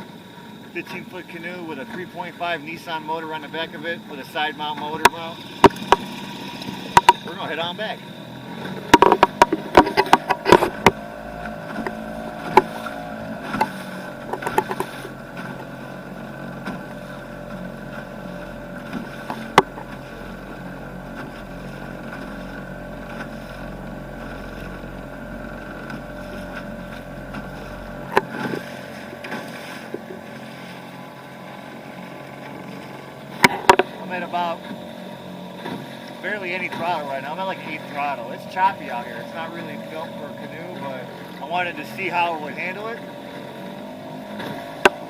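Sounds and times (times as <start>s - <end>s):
outboard engine running low: 0.0s - 45.0s
sharp knocks: 5.0s - 6.2s, 8.8s - 15.1s, 33.4s - 33.9s.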